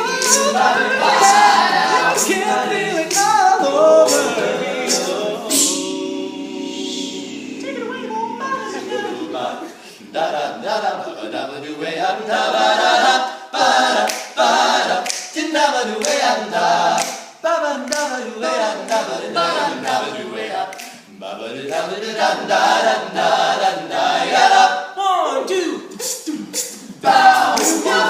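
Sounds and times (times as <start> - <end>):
male a cappella group singing: 0.0 - 25.0, 26.0 - 28.0.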